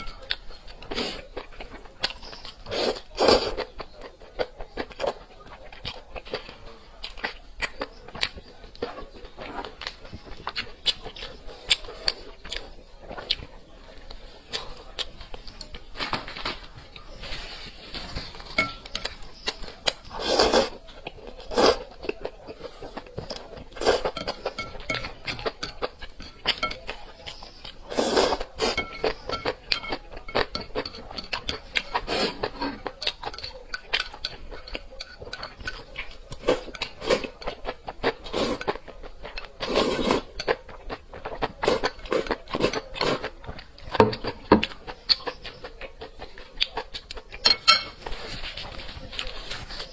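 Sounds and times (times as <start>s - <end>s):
utensils clinking against dishes: 0.0s - 3.7s, 17.2s - 20.8s, 22.5s - 45.6s, 47.0s - 49.9s.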